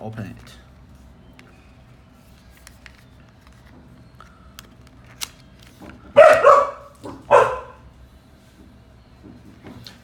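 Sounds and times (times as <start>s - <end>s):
dog barking: 6.2s - 7.8s.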